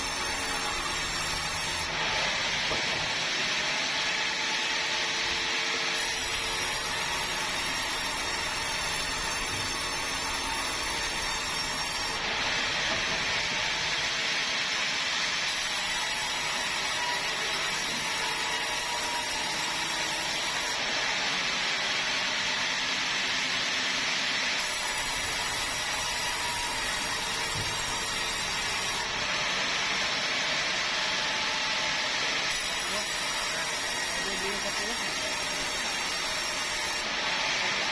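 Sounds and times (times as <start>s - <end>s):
saw blade hissing through timber: 0.0s - 2.0s, 5.8s - 12.2s, 15.2s - 21.0s, 24.2s - 29.2s, 32.2s - 37.2s
high saw whine: 0.0s - 37.9s.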